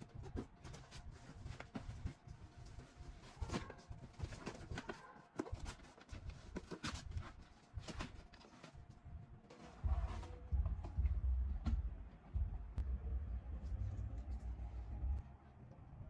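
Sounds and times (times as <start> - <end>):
low rumble: 9.0 - 16.0.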